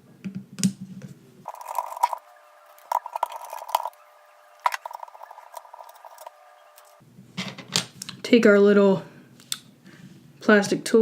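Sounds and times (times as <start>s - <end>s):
screwdriver scratchy grinding: 1.5s - 7.0s.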